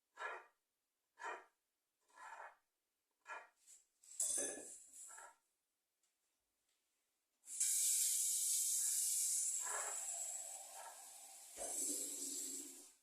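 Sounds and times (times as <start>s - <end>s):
loud steady hiss: 7.5s - 13.0s.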